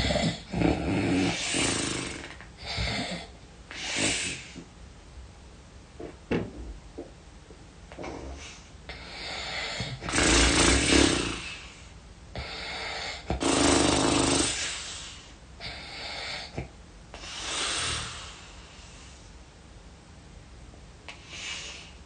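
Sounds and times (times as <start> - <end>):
person snoring heavily: 0.0 - 4.6, 8.1 - 11.7, 12.4 - 16.6, 17.3 - 18.4.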